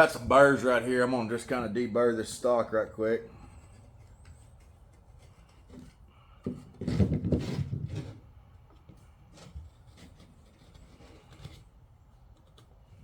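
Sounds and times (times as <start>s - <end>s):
scraping plastic: 3.3s - 13.0s.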